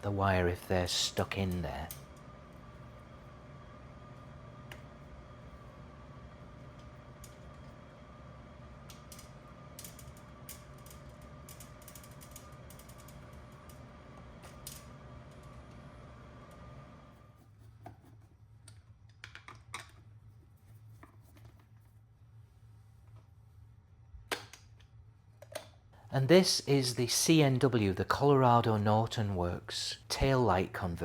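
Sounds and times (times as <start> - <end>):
steady hum: 0.0 - 17.6.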